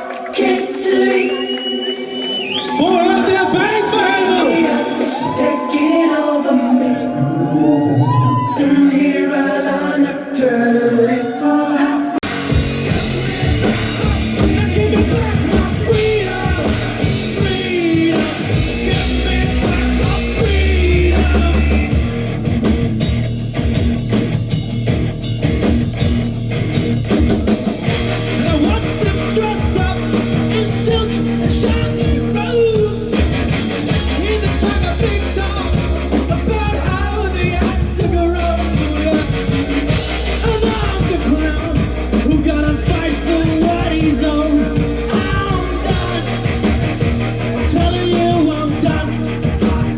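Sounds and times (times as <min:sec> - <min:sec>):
live rock band playing: 0:12.2 - 0:49.9.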